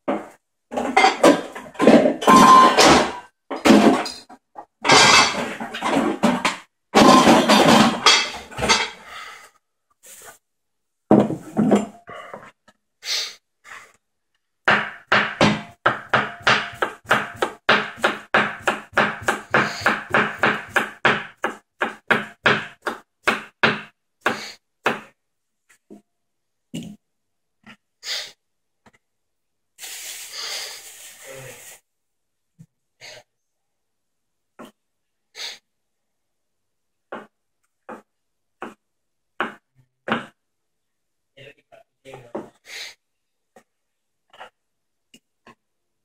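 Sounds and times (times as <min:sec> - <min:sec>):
knife chopping on cutting board: 0:14.7 - 0:25.1.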